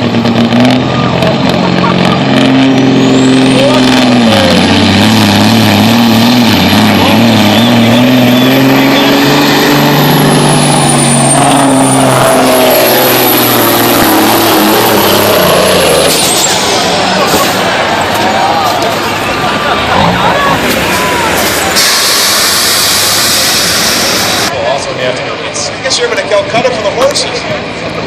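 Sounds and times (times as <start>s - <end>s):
diesel truck engine under load: 0.0s - 28.0s
high turbo whistle: 21.8s - 24.5s.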